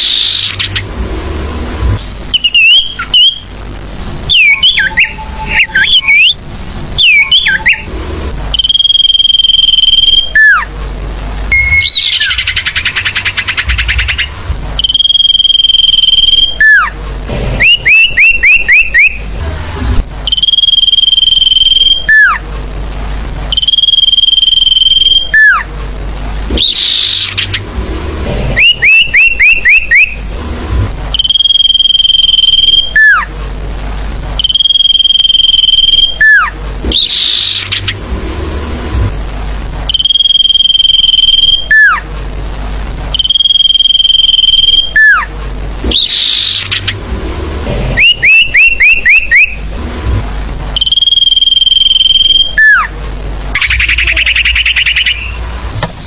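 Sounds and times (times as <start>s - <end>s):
rising chirps: 0.0s - 3.5s, 4.2s - 10.7s, 11.5s - 16.9s, 23.5s - 25.6s, 26.5s - 30.3s, 31.1s - 33.3s, 34.4s - 38.7s, 39.9s - 42.0s, 43.1s - 49.6s, 50.8s - 52.9s, 53.6s - 55.6s
high whistle with downward slur: 50.8s - 52.9s.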